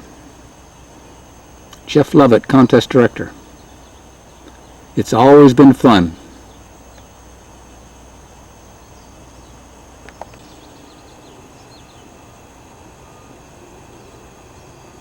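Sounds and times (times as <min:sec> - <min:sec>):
outdoor background hiss: 0:00.0 - 0:15.0
faint bird chirps: 0:03.3 - 0:05.1, 0:06.2 - 0:15.0
small clicks: 0:10.0 - 0:10.6.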